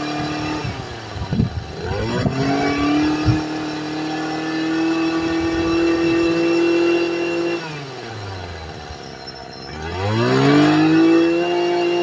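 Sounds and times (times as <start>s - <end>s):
brush cutter engine revving: 0.0s - 12.0s.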